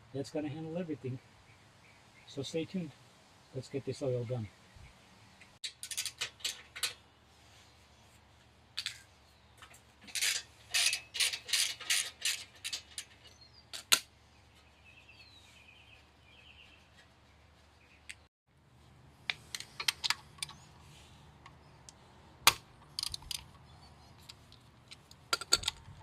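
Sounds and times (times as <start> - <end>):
hand tools clicking and rattling: 5.6 - 7.0, 9.6 - 14.0, 19.3 - 20.6, 22.5 - 26.0.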